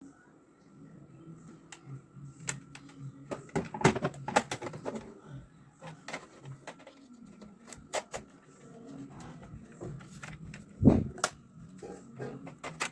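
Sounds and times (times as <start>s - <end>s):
toy rifle and box handled: 12.2s - 12.9s.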